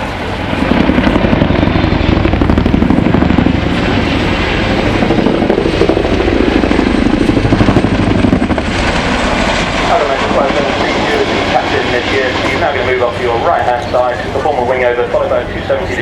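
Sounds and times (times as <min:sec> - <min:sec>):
helicopter rotor blade slap: 0:00.0 - 0:15.2
turbine engines: 0:00.0 - 0:16.0.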